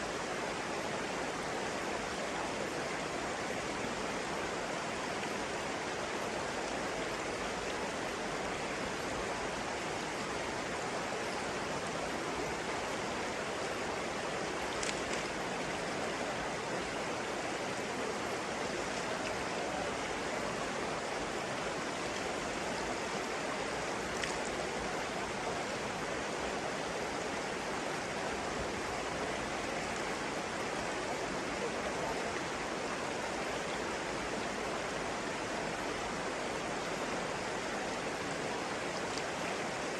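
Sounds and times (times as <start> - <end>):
stream water rushing: 0.0 - 39.9
faint high ticks: 14.7 - 15.4, 24.2 - 24.5.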